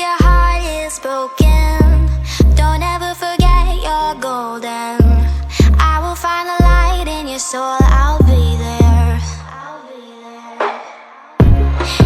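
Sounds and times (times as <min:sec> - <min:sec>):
woman singing: 0:00.0 - 0:12.0
heavy bass notes: 0:00.2 - 0:04.0, 0:05.0 - 0:09.5, 0:11.4 - 0:12.0.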